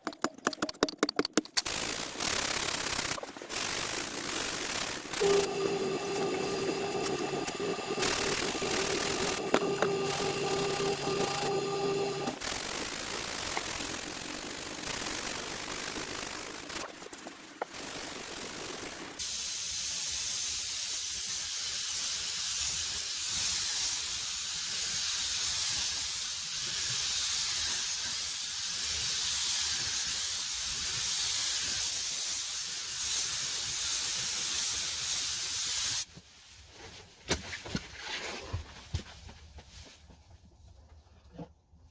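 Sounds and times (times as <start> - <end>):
spray gun hissing: 3.5 - 12.5, 19.2 - 36.0.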